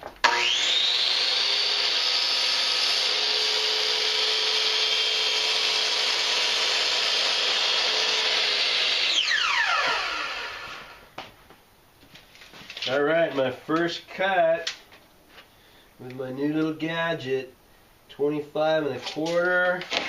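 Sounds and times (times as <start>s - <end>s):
electric saw motor whine: 0.2s - 11.1s.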